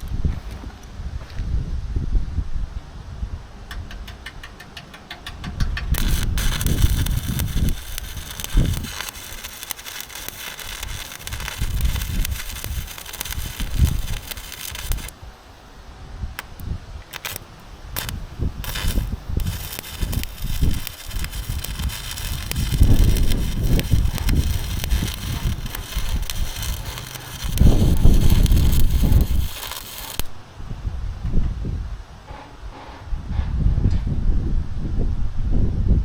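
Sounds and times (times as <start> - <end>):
wind gusts on microphone: 0.0 - 4.1, 5.3 - 36.0
arc welding crackling: 5.7 - 15.8, 16.4 - 30.4.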